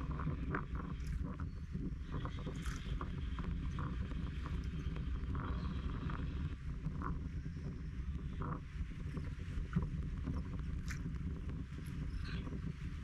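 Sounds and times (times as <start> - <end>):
low rumble: 0.0 - 13.0.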